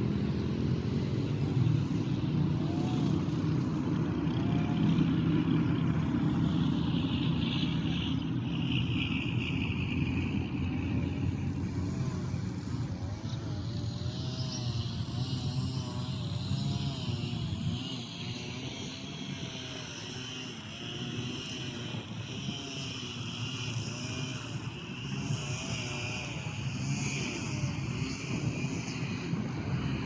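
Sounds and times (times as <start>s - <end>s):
engine drone: 0.0s - 30.0s.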